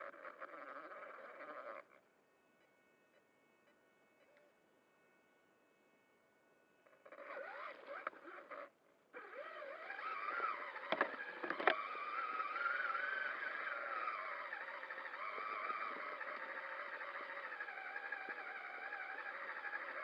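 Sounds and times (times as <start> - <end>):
toy truck electric motor whining: 0.0 - 2.0, 6.8 - 20.0.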